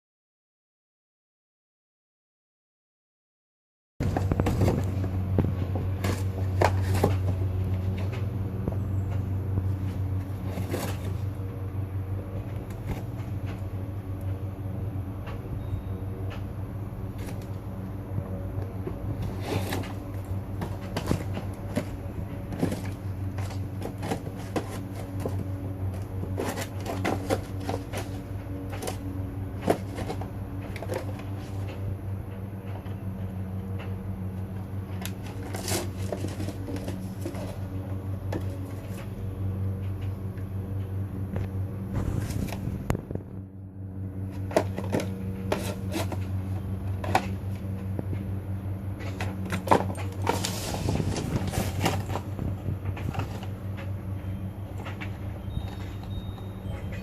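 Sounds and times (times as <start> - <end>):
puppy tearing cardboard: 4.0 - 8.3, 9.6 - 11.5, 19.0 - 31.8, 34.8 - 39.1, 41.9 - 43.1, 44.3 - 47.6, 49.0 - 53.6
steady low hum: 4.0 - 57.0.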